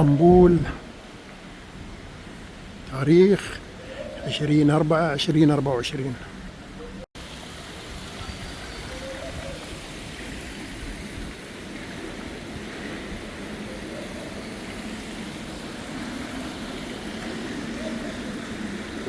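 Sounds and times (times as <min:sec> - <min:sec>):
outdoor background wash: 0:00.0 - 0:19.0
faint distant voices: 0:17.5 - 0:19.0.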